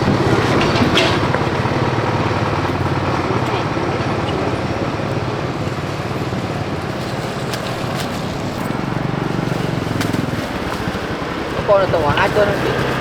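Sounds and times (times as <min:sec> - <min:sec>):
vehicle engine running: 0:00.0 - 0:13.0.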